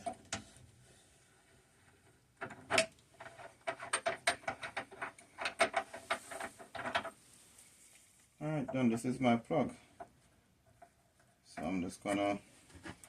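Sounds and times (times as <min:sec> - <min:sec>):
plumbing parts clicking and knocking: 0:01.9 - 0:07.2.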